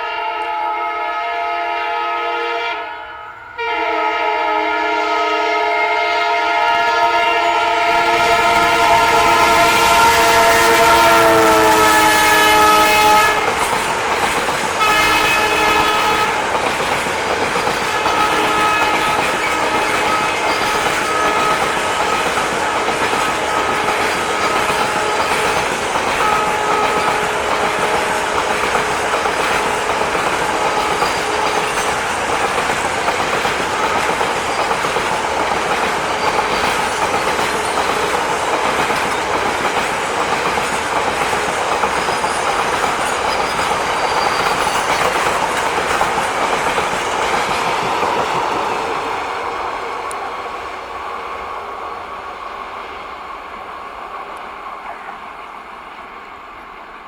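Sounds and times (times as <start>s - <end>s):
locomotive horn blasts: 0.0s - 13.7s, 14.8s - 16.5s, 17.9s - 29.6s
freight train rolling past: 0.0s - 57.0s.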